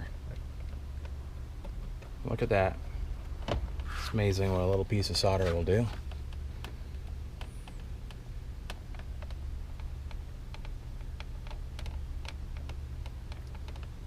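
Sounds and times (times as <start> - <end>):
light irregular clicks: 0.0 - 2.6, 5.7 - 14.0
steady low hum: 0.0 - 14.0.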